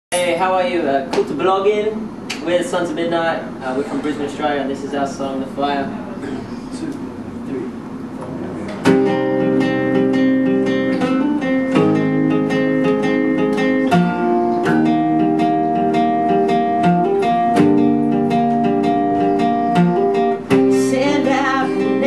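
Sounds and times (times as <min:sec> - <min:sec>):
acoustic guitar strumming chords: 0:08.6 - 0:22.0.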